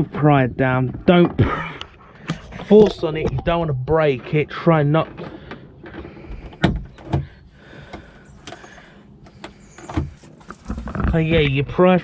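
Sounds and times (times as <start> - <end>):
plastic trim scraping and creaking: 4.2 - 12.0.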